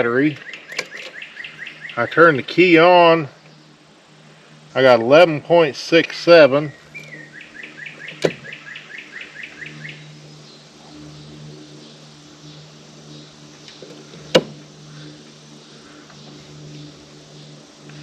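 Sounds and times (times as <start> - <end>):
low steady hum: 0.0 - 18.0
songbird chirping: 0.0 - 18.0
sharp clicks: 0.3 - 1.2.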